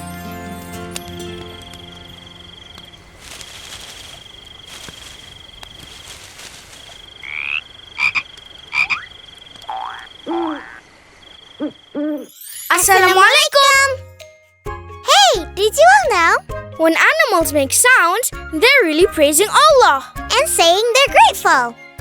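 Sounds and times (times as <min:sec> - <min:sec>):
frogs croaking: 0:02.0 - 0:12.3.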